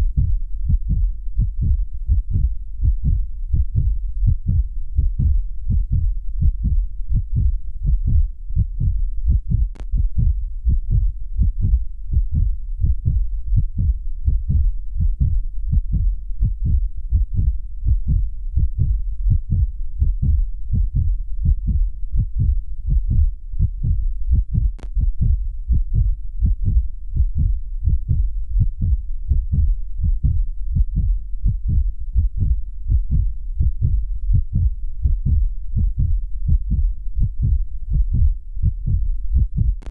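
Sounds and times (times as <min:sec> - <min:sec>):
human heartbeat: 0:00.0 - 0:39.9
faint clicks: 0:09.7 - 0:09.9, 0:24.8 - 0:25.0.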